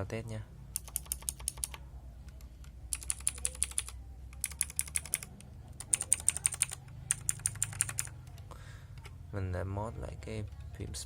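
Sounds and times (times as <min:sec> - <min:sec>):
mechanical keyboard key clicks: 0:00.8 - 0:08.4.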